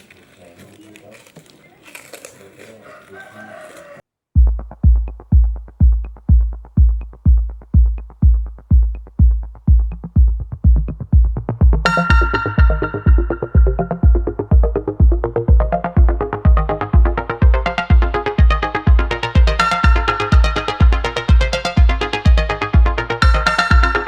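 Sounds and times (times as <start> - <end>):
heavy bass kick: 4.4 - 24.0
synth melody: 9.7 - 24.0.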